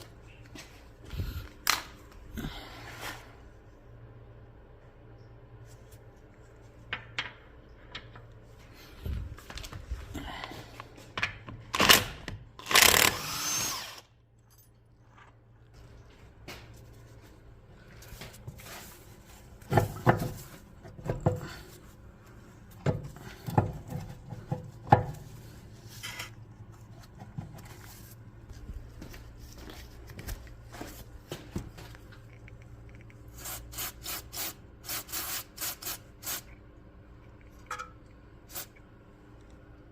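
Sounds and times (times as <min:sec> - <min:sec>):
power tool burst: 0:12.6 - 0:14.0.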